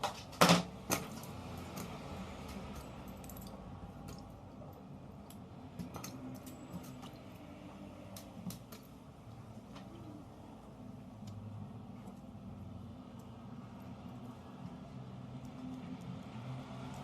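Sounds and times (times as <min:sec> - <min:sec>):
low steady hum: 0:00.0 - 0:17.0
small metal parts clicking: 0:00.9 - 0:07.4.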